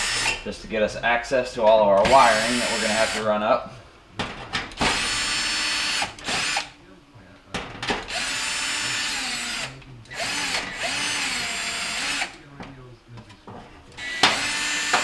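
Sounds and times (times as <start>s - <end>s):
power drill-driver running: 0.0s - 0.5s, 2.0s - 3.3s, 4.8s - 6.8s, 8.0s - 12.5s, 13.9s - 15.0s.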